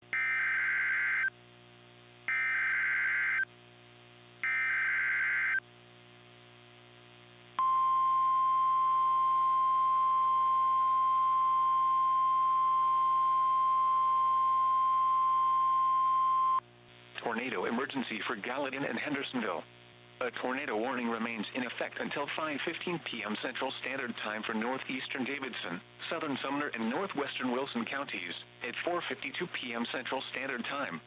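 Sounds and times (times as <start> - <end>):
steady attention tone: 7.6 - 16.6.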